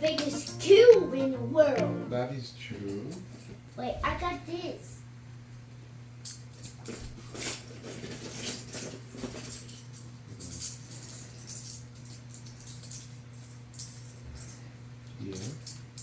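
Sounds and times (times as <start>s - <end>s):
steady low hum: 0.0s - 6.4s.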